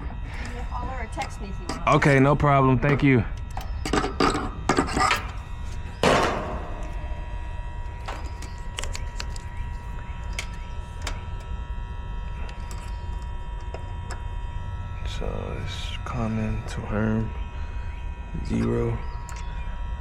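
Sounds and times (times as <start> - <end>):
low hum with high whine: 0.0 - 20.0
metallic clank: 6.0 - 8.9.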